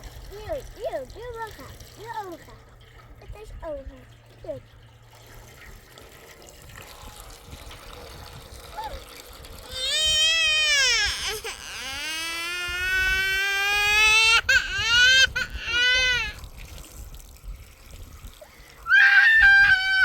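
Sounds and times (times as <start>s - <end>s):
young child crying: 9.6s - 16.4s, 18.8s - 20.0s.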